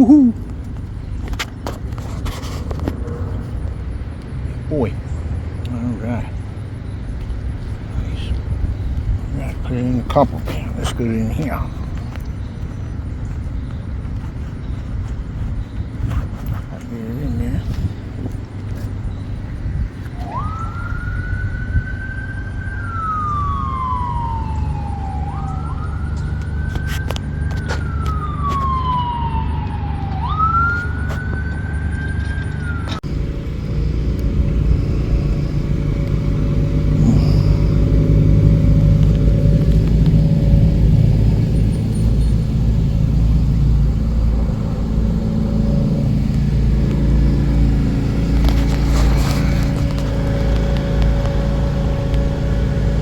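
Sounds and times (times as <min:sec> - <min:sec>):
siren wailing: 0:19.3 - 0:53.0
low steady rumble: 0:31.6 - 0:53.0.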